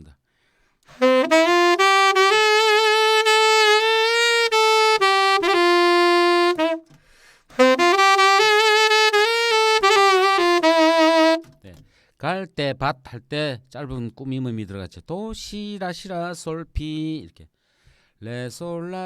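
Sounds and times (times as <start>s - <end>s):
saxophone playing a slow ballad: 0.9s - 11.5s.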